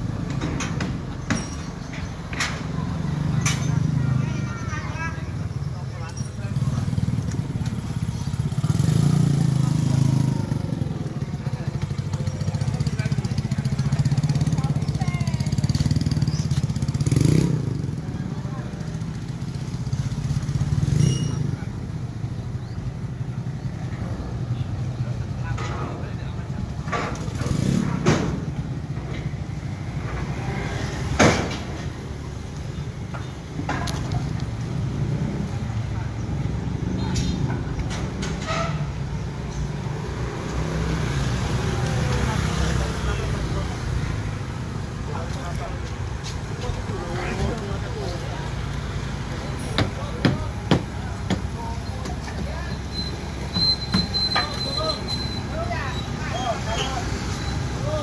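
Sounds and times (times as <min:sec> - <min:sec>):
vehicle engine rumbling: 0:00.0 - 0:58.0.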